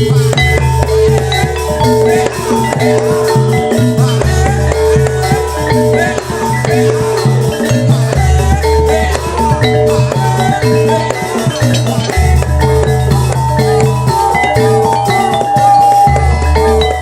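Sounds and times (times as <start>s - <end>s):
drums: 0.0s - 17.0s
metallophones playing melody: 0.0s - 17.0s.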